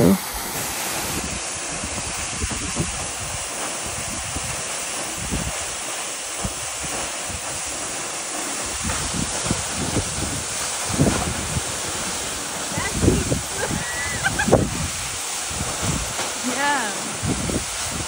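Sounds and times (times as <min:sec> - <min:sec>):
wind buffeting microphone: 0:00.0 - 0:05.8, 0:08.6 - 0:16.2, 0:17.1 - 0:18.0
waterfall rushing: 0:00.0 - 0:18.0.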